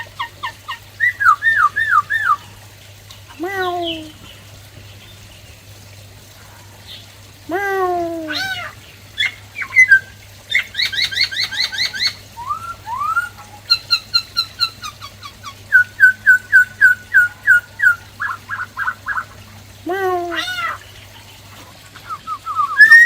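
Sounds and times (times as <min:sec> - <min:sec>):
bird singing: 0:09.2 - 0:19.3, 0:22.2 - 0:23.0.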